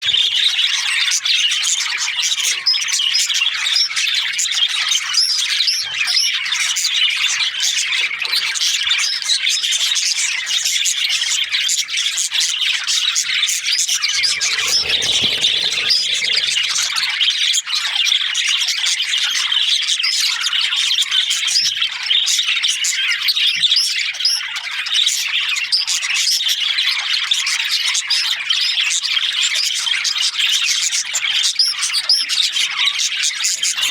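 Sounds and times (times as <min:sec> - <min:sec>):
budgerigars chirping: 0:14.2 - 0:16.8.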